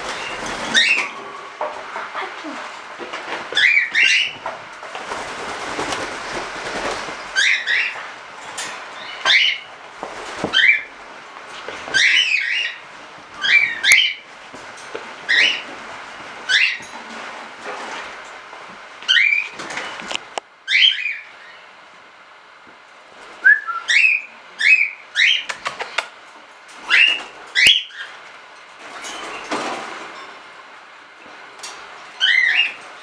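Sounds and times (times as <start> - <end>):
cockatiels whistling calls: 0.1 - 1.1, 3.6 - 4.4, 7.4 - 8.0, 11.9 - 12.8, 20.7 - 21.2, 23.4 - 25.5, 26.9 - 28.1, 32.2 - 32.8.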